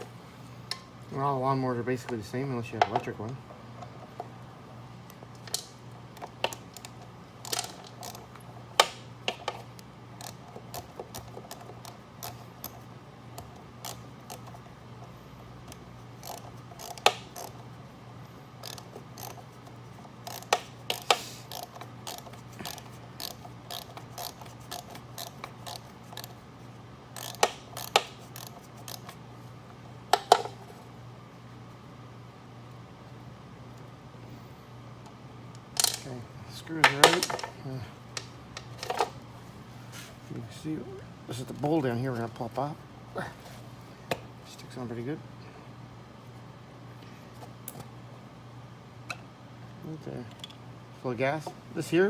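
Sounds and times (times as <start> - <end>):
ratchet wrench clicking: 6.4 - 8.2, 16.2 - 17.6, 18.6 - 19.4, 20.2 - 26.3, 27.1 - 29.2.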